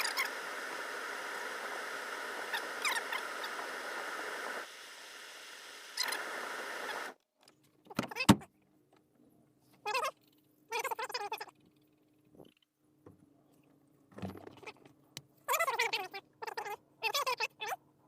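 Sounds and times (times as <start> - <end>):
heater blower rushing: 0.0 - 7.2.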